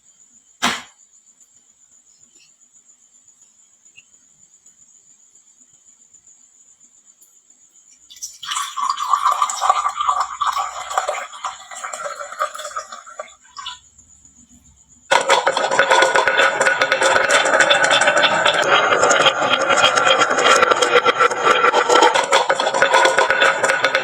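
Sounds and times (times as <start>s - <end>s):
marbles clattering down wooden run: 8.3s - 13.8s, 15.1s - 24.0s.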